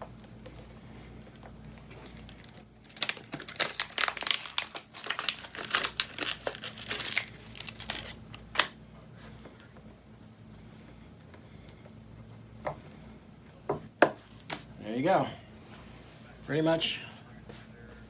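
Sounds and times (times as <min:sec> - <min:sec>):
packaging crinkling: 0:01.7 - 0:08.8.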